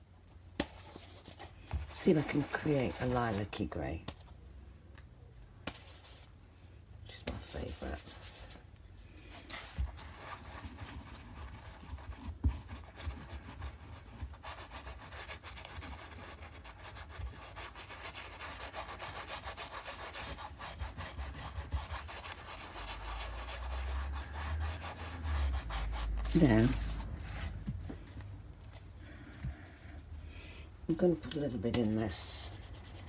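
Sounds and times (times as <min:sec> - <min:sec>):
paintbrush scrubbing through paint: 0:00.6 - 0:03.6, 0:05.7 - 0:06.4, 0:07.4 - 0:27.8, 0:31.8 - 0:33.0.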